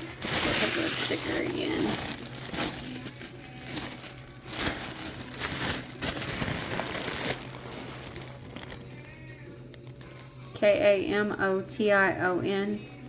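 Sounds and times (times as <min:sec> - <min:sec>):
packaging rustling and crinkling: 0:00.0 - 0:10.4.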